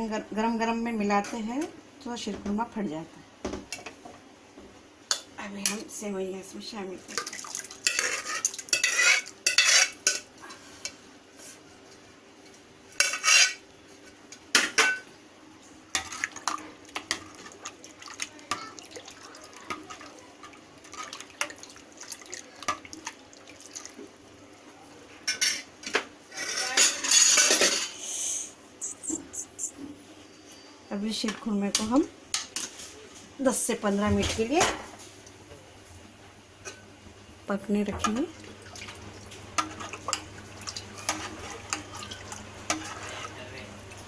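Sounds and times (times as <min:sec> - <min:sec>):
spoon scraping against pot: 0:07.2 - 0:11.0, 0:13.0 - 0:13.6, 0:40.9 - 0:43.4.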